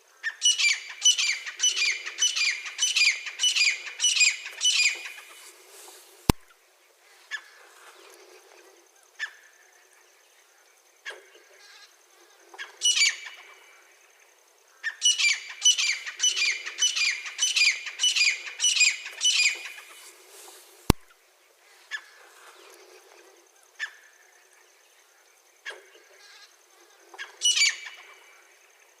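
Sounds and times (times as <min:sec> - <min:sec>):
francolin calling: 0:00.2 - 0:06.4, 0:11.1 - 0:14.1, 0:14.7 - 0:21.0, 0:25.6 - 0:28.7.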